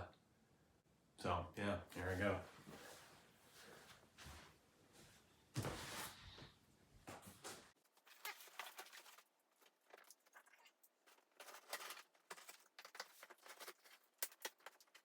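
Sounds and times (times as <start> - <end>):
cardboard box being opened: 8.0 - 9.3.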